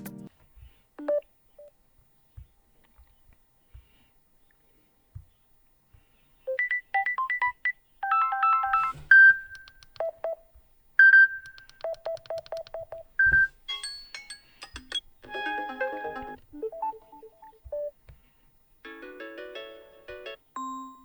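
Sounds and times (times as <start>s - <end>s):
electronic phone ringtone melody: 6.5s - 9.5s, 15.3s - 17.9s
faint clicks: 9.5s - 10.1s.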